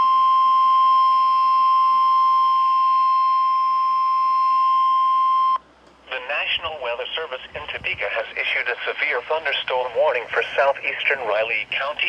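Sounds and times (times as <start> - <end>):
steady alarm tone: 0.0 - 5.6.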